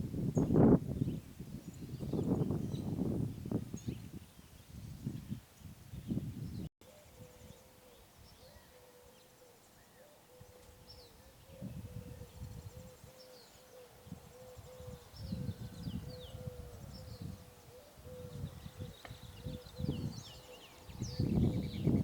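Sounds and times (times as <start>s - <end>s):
wind rumbling on microphone: 0.0s - 8.7s, 10.4s - 13.2s, 13.9s - 22.0s
small birds chirping: 0.4s - 22.0s.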